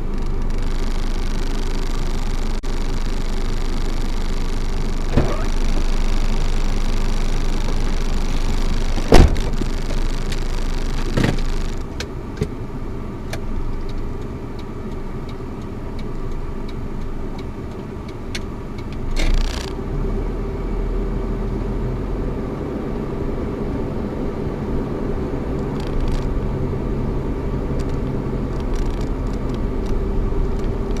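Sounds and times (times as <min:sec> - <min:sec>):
car engine running: 0:00.0 - 0:31.0.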